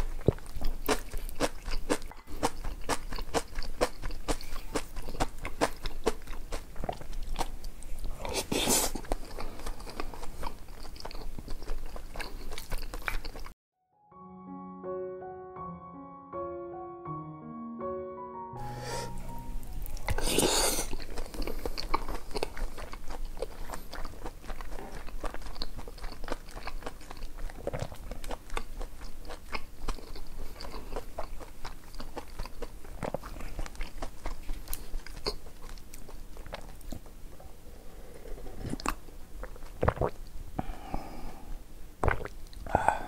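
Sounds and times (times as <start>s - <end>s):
chewing and crunching food: 0.0s - 13.6s, 19.8s - 40.8s, 42.0s - 43.0s
wet mouth clicks: 42.0s - 42.7s.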